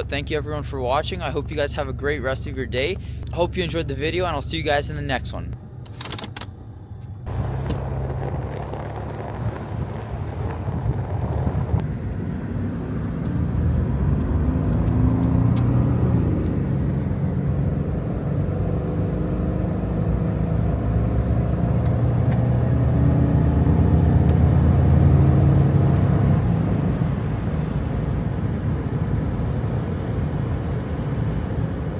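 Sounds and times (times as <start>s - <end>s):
car engine driving off: 6.9s - 31.9s.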